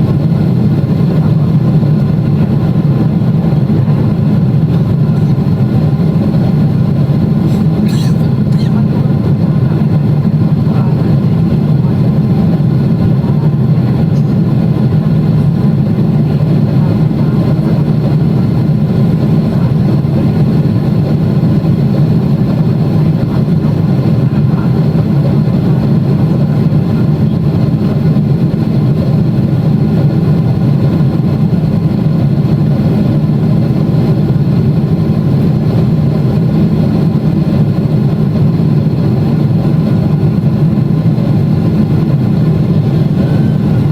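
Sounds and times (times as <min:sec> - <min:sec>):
airplane cabin drone: 0:00.0 - 0:43.9.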